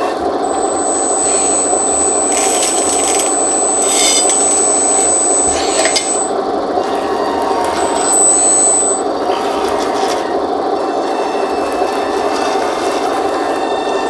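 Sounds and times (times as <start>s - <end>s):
gritty motor and pump hum: 0.0s - 14.0s
thin high whine: 0.2s - 10.0s.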